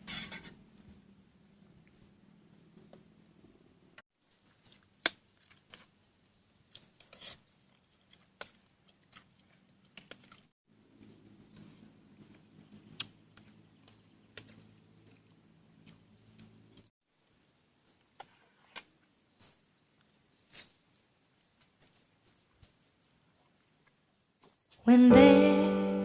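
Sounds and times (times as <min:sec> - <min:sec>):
low hum: 0:24.9 - 0:26.0.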